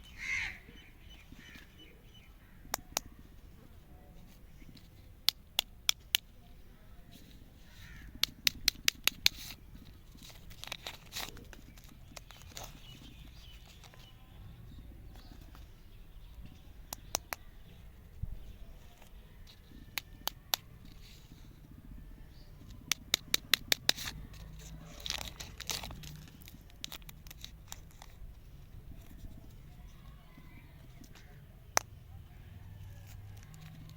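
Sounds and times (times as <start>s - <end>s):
sharp plastic clicks: 2.6s - 3.4s, 4.7s - 6.4s, 7.7s - 14.1s, 16.3s - 17.8s, 19.0s - 21.2s, 22.6s - 28.3s, 30.8s - 32.0s, 32.8s - 33.9s
wrapping rustling: 9.3s - 14.1s, 23.9s - 30.2s.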